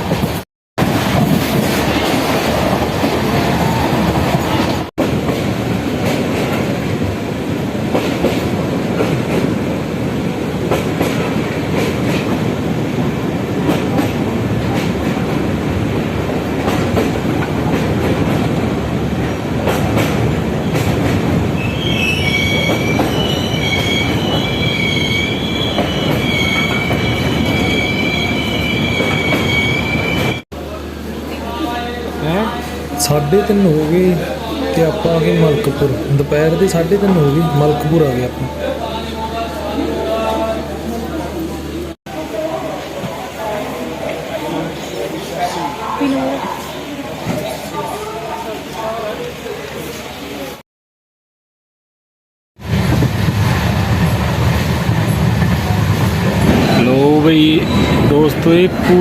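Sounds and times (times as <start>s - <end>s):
train rumbling on rails: 0.0s - 50.6s, 52.6s - 59.0s
high wavering wheel squeal: 21.6s - 30.4s, 57.4s - 58.3s.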